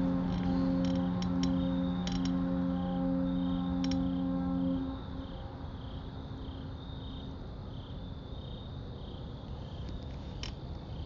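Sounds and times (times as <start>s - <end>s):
air horns: 0.0s - 6.2s
crickets chirping: 0.0s - 11.0s
faint outdoor noise: 0.0s - 11.0s.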